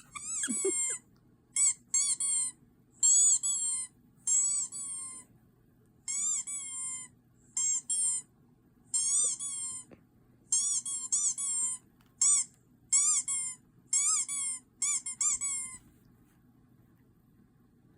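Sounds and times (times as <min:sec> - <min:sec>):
high-pitched squeaks: 0:00.0 - 0:01.0.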